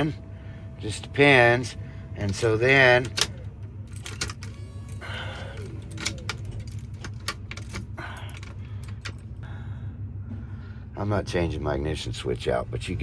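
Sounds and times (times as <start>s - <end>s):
low steady hum: 0.0s - 13.0s
small metallic clicks: 2.2s - 9.3s
keyring jangling: 2.2s - 9.4s.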